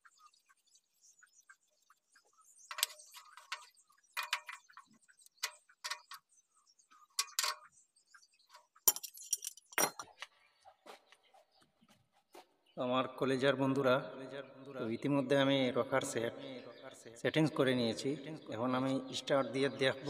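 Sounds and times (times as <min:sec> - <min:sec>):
metal tools tapping engine parts: 0:02.7 - 0:06.3, 0:07.2 - 0:07.6, 0:08.9 - 0:10.2.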